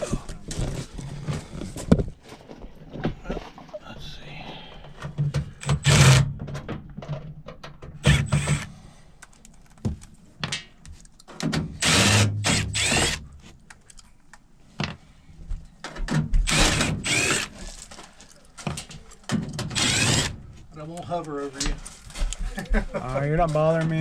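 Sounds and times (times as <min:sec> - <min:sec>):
cordless drill whining: 0:05.6 - 0:06.2, 0:08.0 - 0:08.7, 0:11.8 - 0:13.2, 0:16.5 - 0:17.7, 0:19.7 - 0:20.4.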